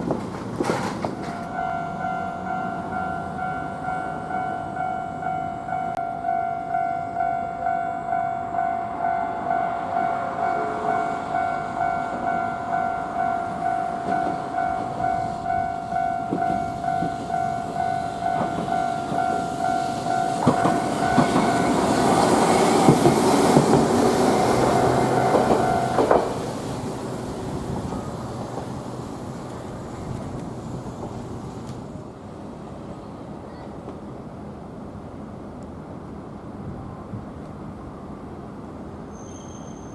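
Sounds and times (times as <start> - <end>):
level-crossing warning bell: 1.2 - 23.6
train running noise rushing: 8.4 - 34.2
train wheels clacking: 11.4 - 26.9.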